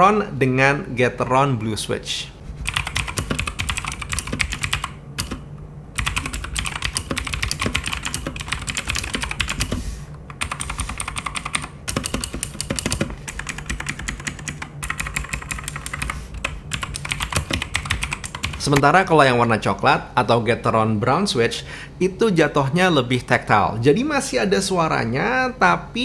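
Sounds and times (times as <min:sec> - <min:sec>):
fast mechanical keyboard typing: 0:02.6 - 0:18.9.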